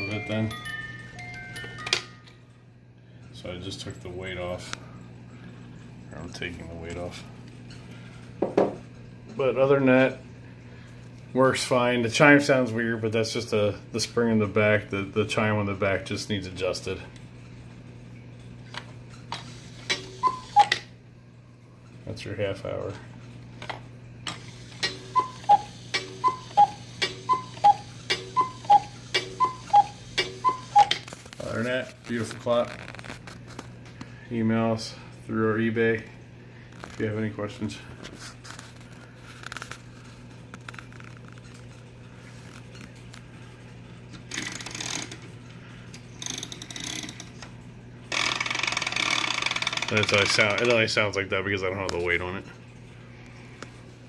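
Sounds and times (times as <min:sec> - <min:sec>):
cuckoo clock calling: 0:00.0 - 0:02.3, 0:19.9 - 0:20.9, 0:24.8 - 0:31.0
clock movement whirring and ratcheting: 0:24.3 - 0:31.0, 0:44.3 - 0:45.2, 0:48.1 - 0:50.8.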